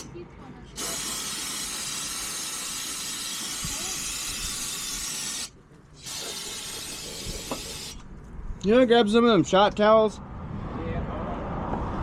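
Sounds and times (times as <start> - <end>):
aerosol can spraying: 0.8 - 8.0.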